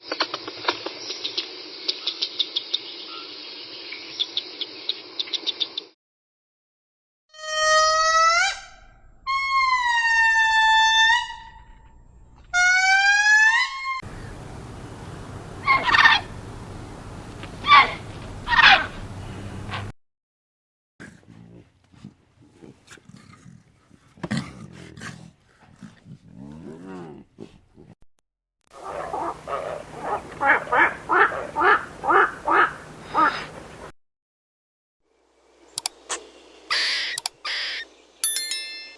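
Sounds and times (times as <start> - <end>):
steady hiss: 14.0 - 19.9, 28.8 - 33.9
animal chirping: 14.1 - 19.9, 28.8 - 33.9.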